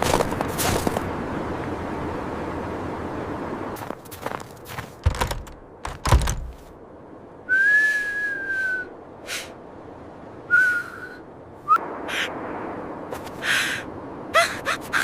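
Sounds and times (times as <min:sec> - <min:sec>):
breathy whistle: 0:07.5 - 0:08.9, 0:10.5 - 0:11.8.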